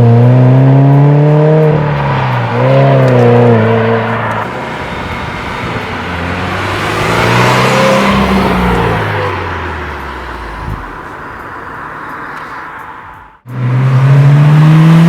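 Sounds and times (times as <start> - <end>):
car engine and exhaust passing: 0.0 - 15.0.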